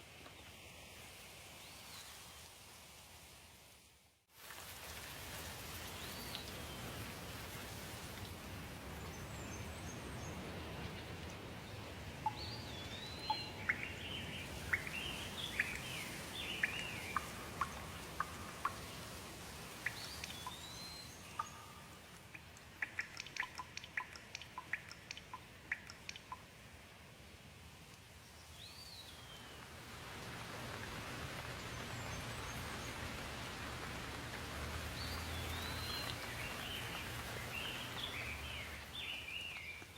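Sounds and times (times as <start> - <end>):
rain hiss: 0.0 - 39.9
birds chirping: 9.2 - 19.1, 19.8 - 26.4, 34.9 - 39.9.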